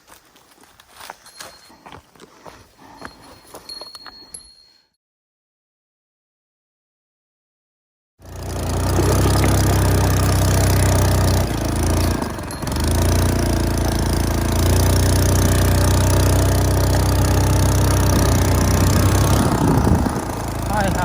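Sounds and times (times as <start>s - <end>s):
small engine running: 8.2s - 21.0s.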